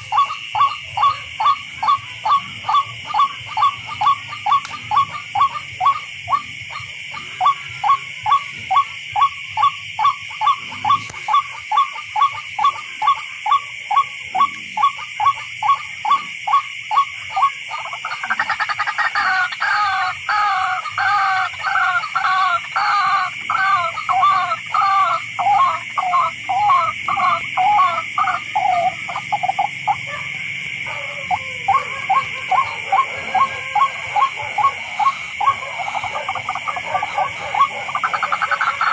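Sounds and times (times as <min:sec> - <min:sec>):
bird calling sharp repeated notes: 0:14.4 - 0:30.2.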